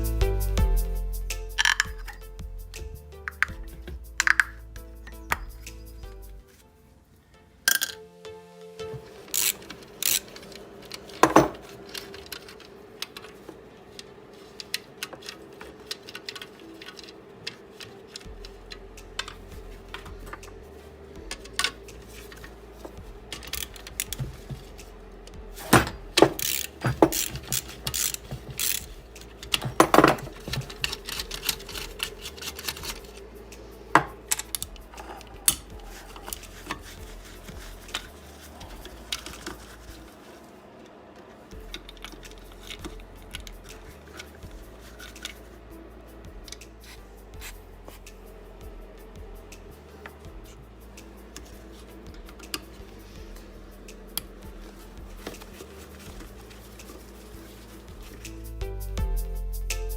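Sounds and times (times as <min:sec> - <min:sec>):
metal tools clinking and knocking: 0:08.9 - 0:13.6, 0:14.5 - 0:40.2.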